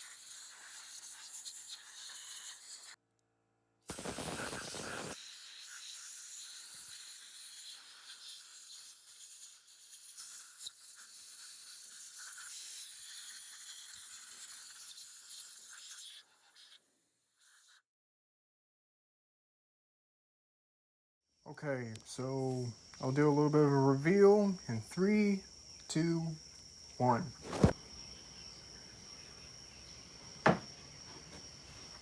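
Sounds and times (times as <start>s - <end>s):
pressurised spray hissing: 3.9s - 16.8s.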